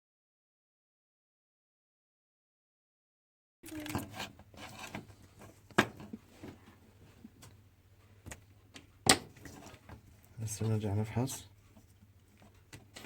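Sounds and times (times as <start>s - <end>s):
rubbing and scraping on workbench: 3.9s - 6.8s.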